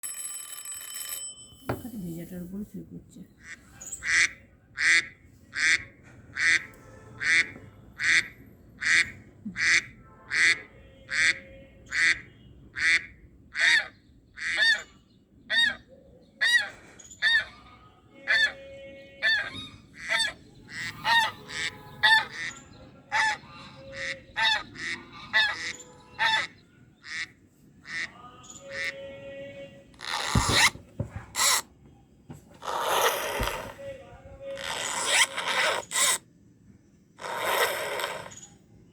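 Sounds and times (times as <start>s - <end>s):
goose honking: 6.4s - 12.2s, 19.2s - 22.5s, 23.1s - 27.3s.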